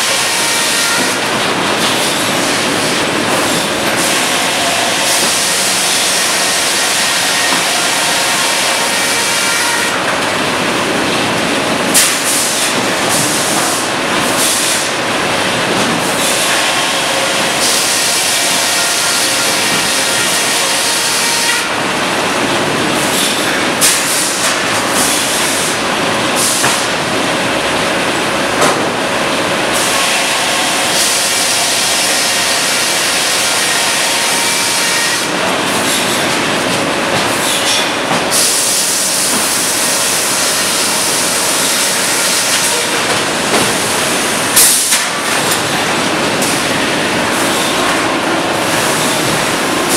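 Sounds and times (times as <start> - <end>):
sawmill machinery running: 0.0 - 49.9.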